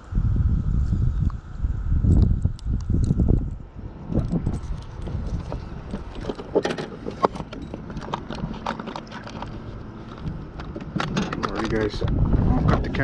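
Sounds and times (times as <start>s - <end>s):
low rumble: 0.0s - 13.0s
irregular clicks and knocks: 4.6s - 12.2s.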